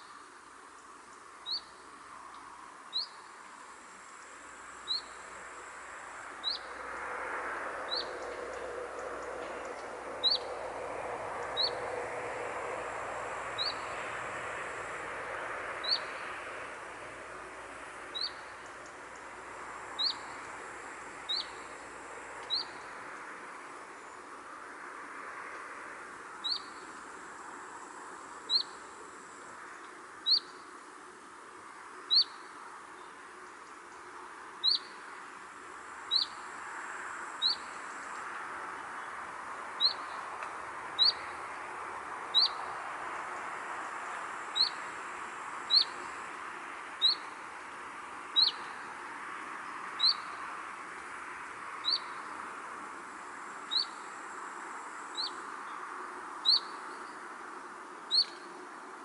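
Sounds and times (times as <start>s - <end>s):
bird chirping: 1.4s - 1.8s, 2.9s - 3.3s, 4.9s - 5.2s, 6.4s - 6.8s, 7.9s - 10.7s, 11.5s - 11.9s, 13.6s - 13.9s, 15.8s - 16.2s, 18.1s - 19.3s, 20.0s - 20.4s, 21.3s - 21.7s, 22.5s - 22.9s, 26.4s - 26.8s, 28.5s - 28.8s, 32.1s - 32.4s, 34.6s - 35.0s, 36.1s - 36.4s, 37.4s - 37.8s, 39.8s - 40.3s, 41.0s - 41.4s, 42.3s - 42.6s, 44.6s - 44.8s, 45.7s - 46.0s, 47.0s - 47.3s, 48.4s - 48.8s, 50.0s - 50.4s, 51.8s - 52.3s, 53.7s - 54.0s, 55.2s - 55.8s, 56.4s - 57.2s, 58.0s - 58.5s.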